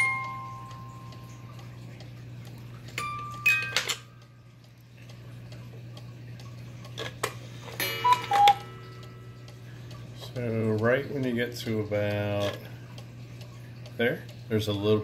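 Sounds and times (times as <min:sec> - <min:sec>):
music box metallic notes: 0:00.0 - 0:01.5, 0:03.0 - 0:04.2, 0:07.8 - 0:09.6
clock ticking: 0:00.0 - 0:07.0, 0:07.8 - 0:15.0
clock mechanism clicks: 0:00.0 - 0:15.0.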